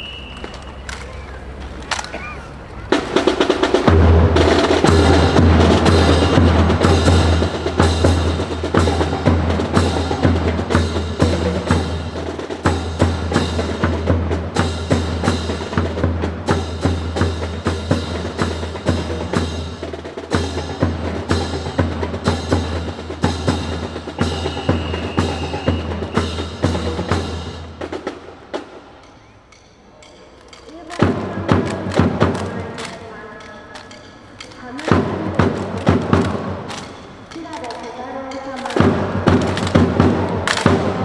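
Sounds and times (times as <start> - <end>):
sharp percussive clicks: 29.0 - 41.0.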